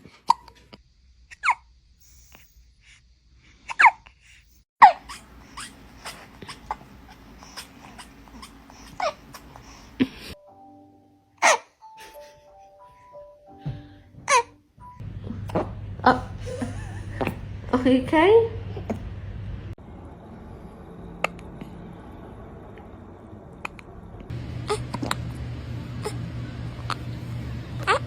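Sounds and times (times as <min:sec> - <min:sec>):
baby hiccuping: 0:03.7 - 0:04.1, 0:14.3 - 0:14.5
simple tinkly melody: 0:10.4 - 0:15.0.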